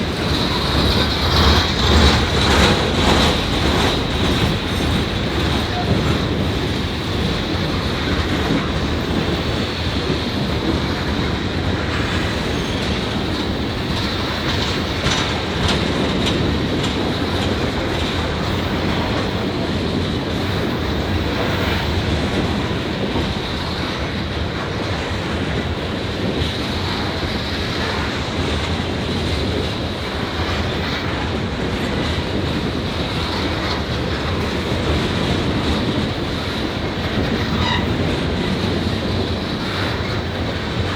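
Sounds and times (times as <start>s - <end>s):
train wheels clicking over rail joints: 0.0s - 40.9s
wheel squeal: 12.0s - 13.6s, 37.1s - 38.4s.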